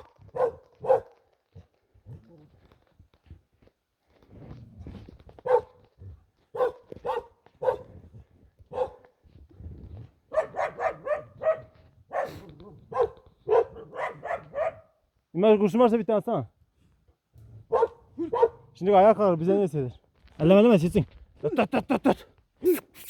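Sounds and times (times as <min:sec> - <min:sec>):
dog barking: 0:00.0 - 0:01.2, 0:05.4 - 0:05.8, 0:06.5 - 0:08.0, 0:08.7 - 0:09.1, 0:10.3 - 0:15.0, 0:17.7 - 0:18.7.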